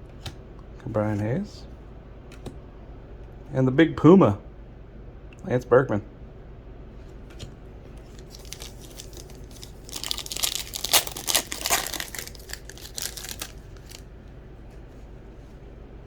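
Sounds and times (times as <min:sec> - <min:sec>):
wrapper crinkling and tearing: 0:08.0 - 0:14.1.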